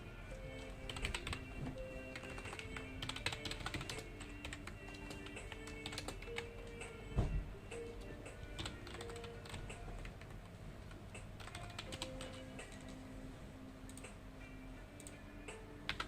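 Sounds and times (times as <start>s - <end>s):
soft background music: 0.0s - 16.0s
computer keyboard typing: 0.6s - 6.9s, 8.4s - 13.0s
heavy thud: 7.2s - 7.5s.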